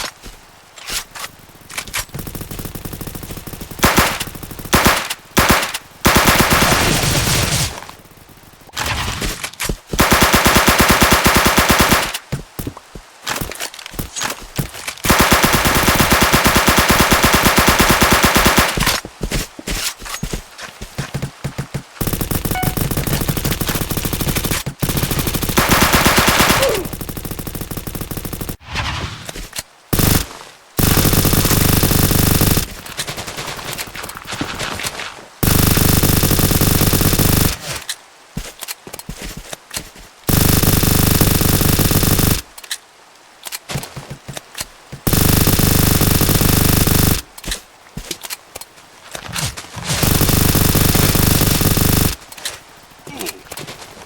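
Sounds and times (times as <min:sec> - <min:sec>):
airsoft gun rapid fire: 0:02.2 - 0:07.8, 0:10.0 - 0:12.3, 0:15.0 - 0:19.0, 0:21.5 - 0:28.6, 0:30.0 - 0:30.2, 0:30.8 - 0:34.4, 0:35.4 - 0:37.6, 0:40.3 - 0:42.4, 0:45.1 - 0:47.2, 0:50.0 - 0:52.2.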